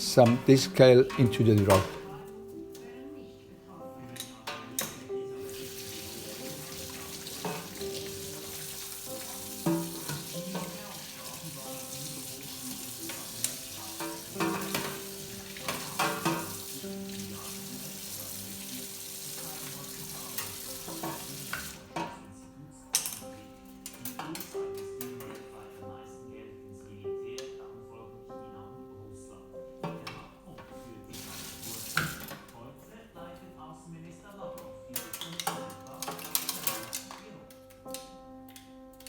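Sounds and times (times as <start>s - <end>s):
soft background music: 0.0s - 39.0s
steady cleaning hiss: 5.2s - 22.0s, 30.7s - 32.4s.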